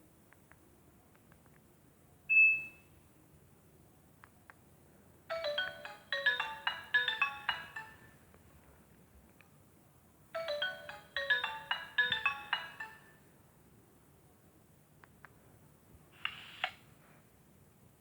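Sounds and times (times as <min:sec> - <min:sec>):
electronic ringtone melody: 0:05.3 - 0:08.2, 0:10.4 - 0:13.2.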